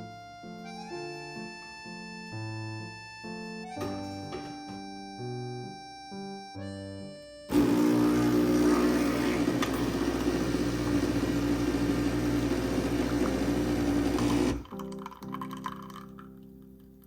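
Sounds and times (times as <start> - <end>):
electric motor humming: 7.5 - 14.6.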